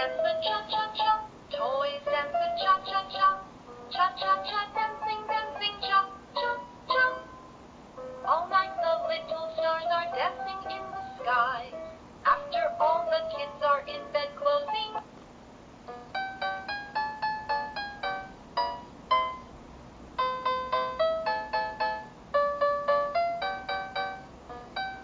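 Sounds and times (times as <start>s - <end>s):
synthetic voice singing: 0.0s - 7.2s, 8.2s - 15.0s
keyboard-like melody: 2.4s - 8.8s, 15.9s - 19.6s, 20.2s - 25.0s.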